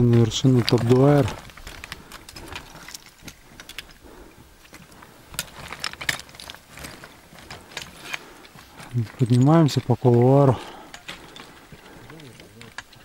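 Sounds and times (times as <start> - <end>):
climbing gear clicks and scrapes: 0.0 - 13.0.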